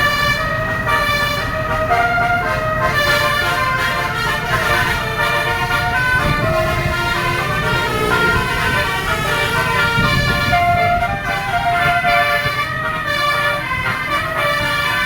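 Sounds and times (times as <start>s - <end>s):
engine and road noise rumble: 0.0s - 15.0s
multi-tone bus horn melody: 0.0s - 15.0s.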